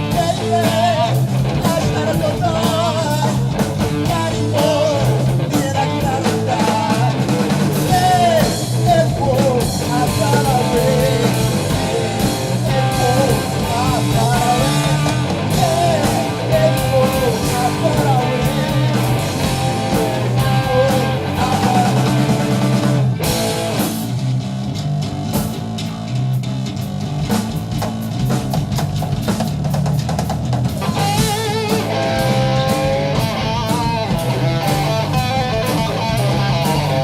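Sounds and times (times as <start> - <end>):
person singing: 0.0 - 22.9
live rock band playing: 0.0 - 37.0.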